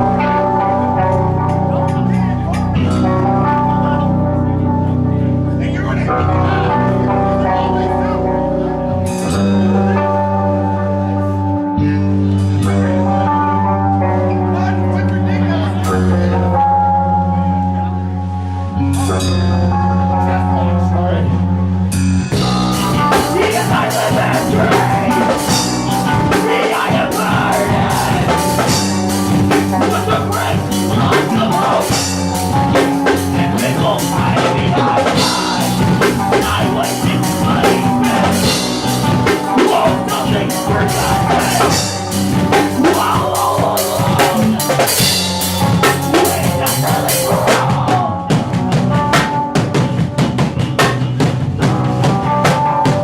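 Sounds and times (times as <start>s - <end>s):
live rock band playing: 0.0s - 53.0s
drum kit steady beat: 22.0s - 53.0s.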